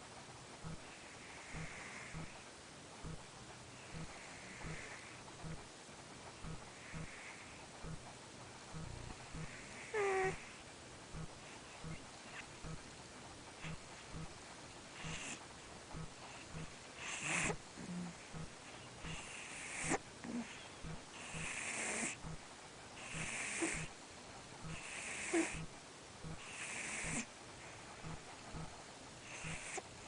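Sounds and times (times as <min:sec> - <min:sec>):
cat snoring: 0:00.7 - 0:02.4, 0:03.8 - 0:05.6, 0:06.4 - 0:08.0, 0:08.7 - 0:10.6, 0:11.2 - 0:12.9, 0:13.6 - 0:14.4, 0:15.0 - 0:22.4, 0:23.0 - 0:24.0, 0:24.6 - 0:29.9.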